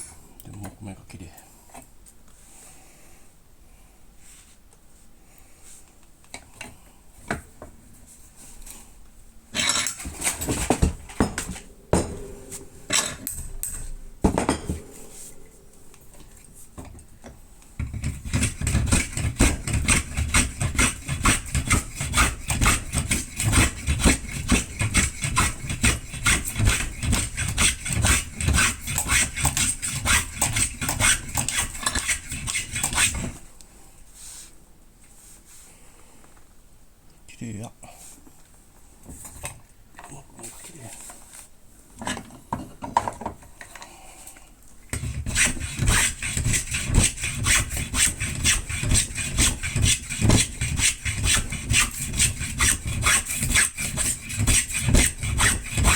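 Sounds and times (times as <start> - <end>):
hand tool scraping wood: 9.6 - 13.3, 17.8 - 33.4, 45.0 - 55.9.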